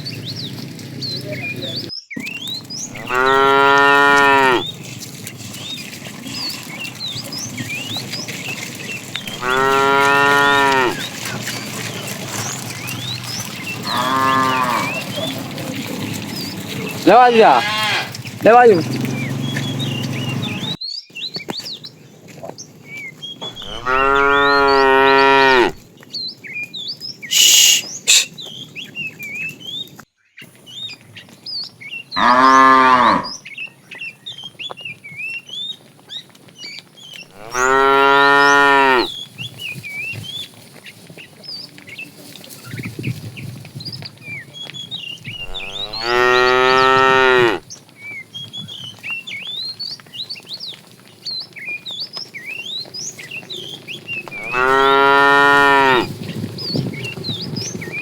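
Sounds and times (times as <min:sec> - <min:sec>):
small birds chirping: 0:00.0 - 0:58.0
cattle mooing: 0:02.9 - 0:04.8, 0:09.0 - 0:20.8, 0:23.4 - 0:25.8, 0:32.2 - 0:33.3, 0:37.3 - 0:39.1, 0:45.4 - 0:47.6, 0:54.3 - 0:56.1.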